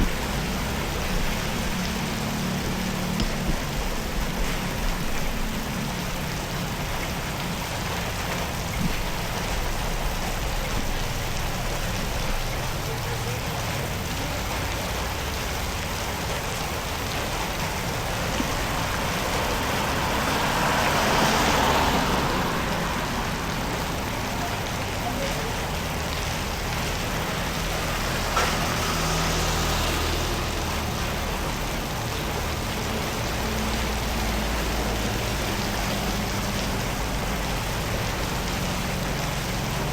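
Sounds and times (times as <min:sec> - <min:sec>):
rain and running water: 0:00.0 - 0:39.9
vehicle passing: 0:00.0 - 0:39.9.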